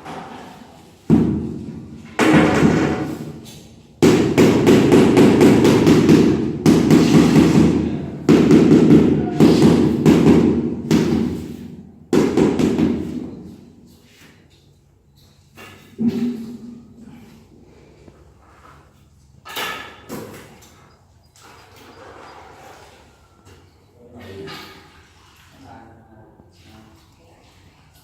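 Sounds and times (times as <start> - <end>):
trowel strokes: 20.8 - 24.0.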